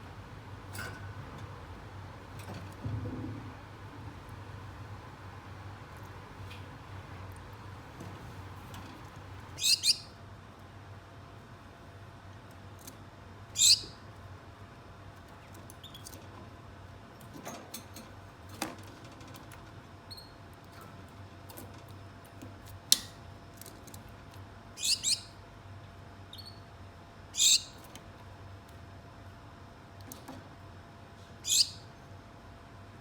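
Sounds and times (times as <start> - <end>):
faint bird peeps and ticks: 9.6 - 10.1, 13.6 - 14.0, 24.8 - 25.4, 26.3 - 26.7, 27.4 - 27.8, 31.4 - 31.9
finches calling: 9.6 - 10.1, 13.6 - 14.0, 24.8 - 25.3, 27.4 - 27.8, 31.4 - 31.8.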